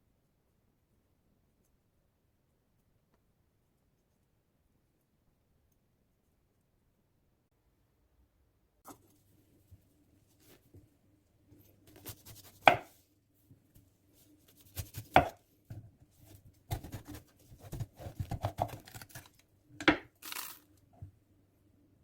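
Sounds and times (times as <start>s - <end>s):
knife chopping on cutting board: 12.0s - 12.9s, 14.8s - 15.9s, 16.7s - 20.1s.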